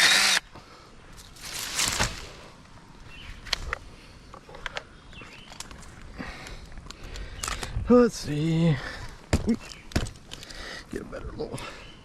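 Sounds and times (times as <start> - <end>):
rustling: 1.1 - 2.6.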